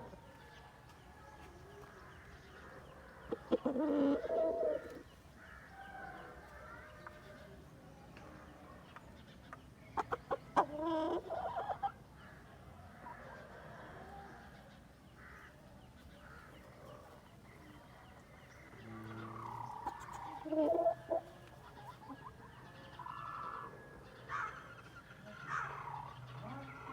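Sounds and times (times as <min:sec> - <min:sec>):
chickens clucking and calling: 0:00.0 - 0:01.0, 0:02.2 - 0:07.6, 0:09.0 - 0:12.2, 0:15.9 - 0:26.9.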